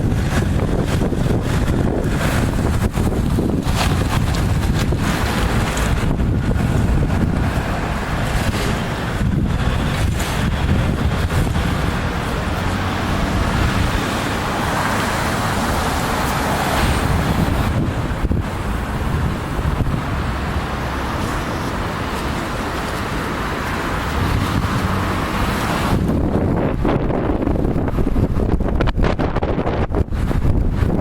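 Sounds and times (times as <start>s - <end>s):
road vehicle passing: 0.0s - 31.0s
wind buffeting microphone: 0.0s - 31.0s.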